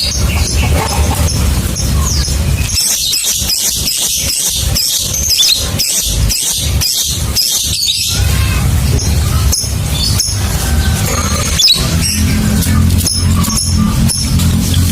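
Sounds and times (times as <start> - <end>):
steady low rumble: 0.0 - 3.2, 8.1 - 14.9
bird chattering high chirps: 0.0 - 8.3, 8.9 - 14.6.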